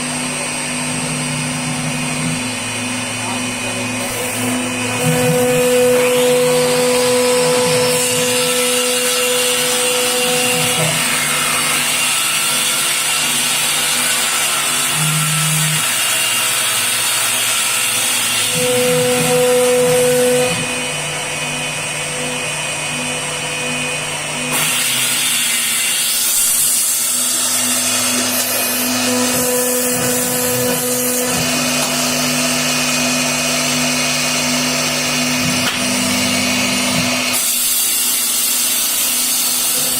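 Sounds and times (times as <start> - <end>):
motor hum shifting in pitch: 0.0 - 11.6, 18.2 - 24.8, 26.3 - 37.4
router spindle whine: 0.0 - 39.9.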